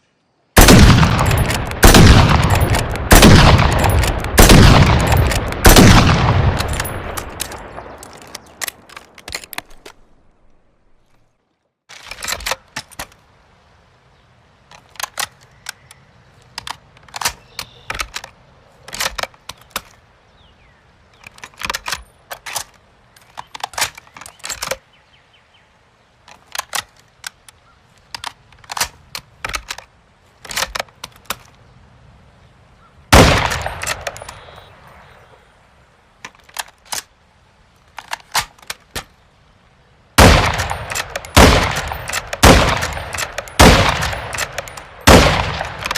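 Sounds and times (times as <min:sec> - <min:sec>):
rifle shots with echoes: 0:00.6 - 0:08.0, 0:33.1 - 0:34.7, 0:40.2 - 0:45.9.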